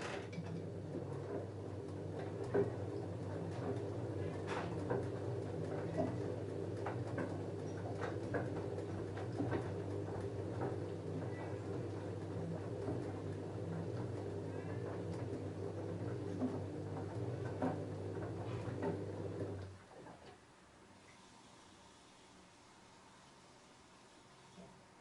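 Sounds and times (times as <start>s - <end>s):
washing machine motor hum: 0.0s - 20.4s.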